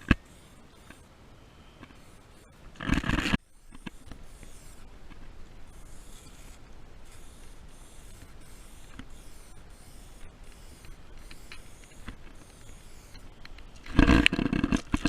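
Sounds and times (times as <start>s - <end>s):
spray paint can hissing: 3.6s - 4.9s, 5.7s - 13.6s.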